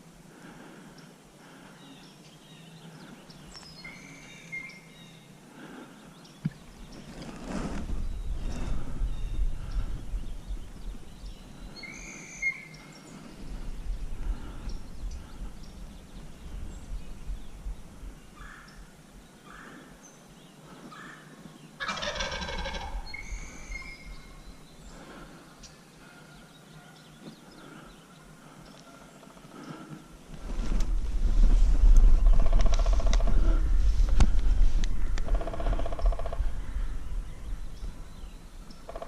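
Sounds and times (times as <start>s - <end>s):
turkey gobbling: 21.8s - 23.2s.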